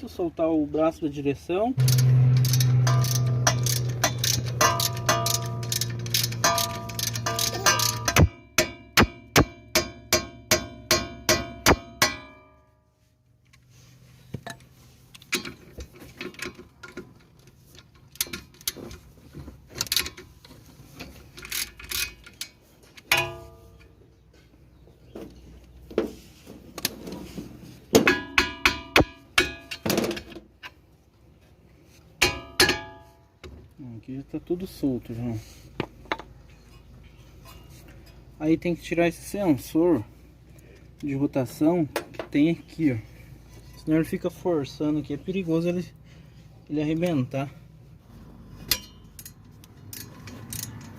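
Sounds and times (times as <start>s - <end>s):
hammer ringing on steel: 1.8s - 5.8s, 6.4s - 12.8s
tools clattering: 1.8s - 12.6s, 14.4s - 24.0s, 26.8s - 30.8s, 48.6s - 50.9s.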